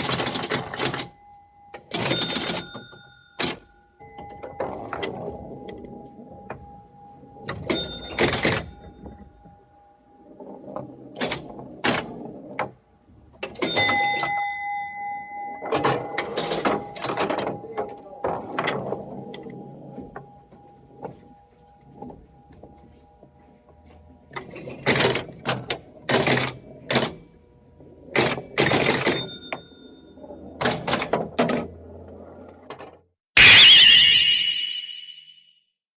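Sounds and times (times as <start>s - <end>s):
cartoon swishes and bursts: 33.4s - 35.4s
steady held tone: 33.4s - 35.5s.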